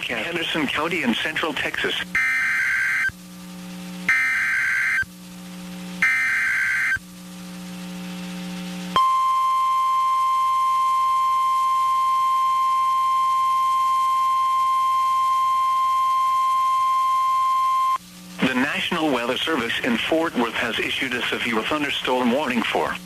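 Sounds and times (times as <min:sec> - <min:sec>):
screechy data tones: 0:00.0 - 0:03.2, 0:04.0 - 0:05.1, 0:06.0 - 0:07.0
steady warning alarm tone: 0:02.1 - 0:03.2, 0:04.0 - 0:05.2, 0:05.9 - 0:07.1, 0:08.9 - 0:18.0.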